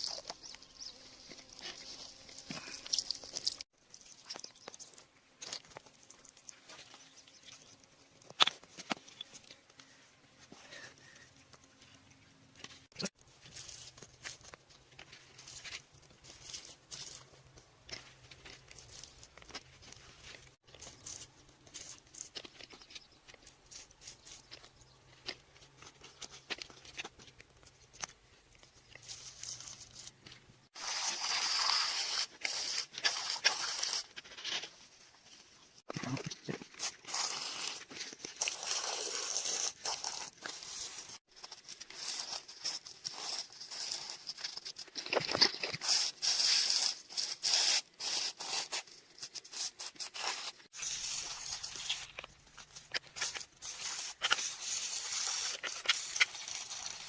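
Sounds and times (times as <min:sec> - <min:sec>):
hands and tools working soil: 0:00.0 - 0:57.0.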